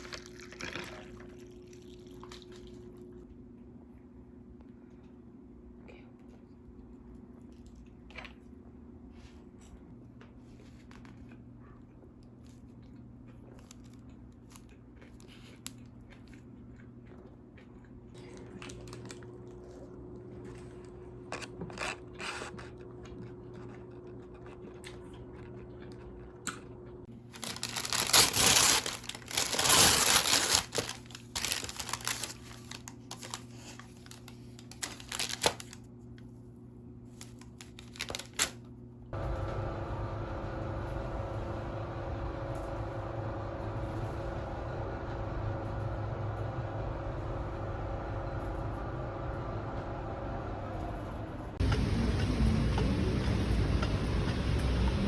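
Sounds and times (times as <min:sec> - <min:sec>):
faint low hum: 0:00.0 - 0:55.0
crinkling and tearing: 0:27.2 - 0:35.8, 0:37.1 - 0:38.6.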